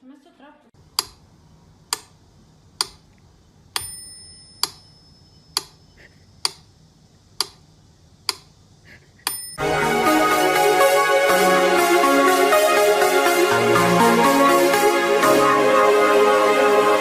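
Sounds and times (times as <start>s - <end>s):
high bell-like ding: 3.8s - 5.6s, 9.3s - 9.6s
loud music: 9.6s - 17.0s.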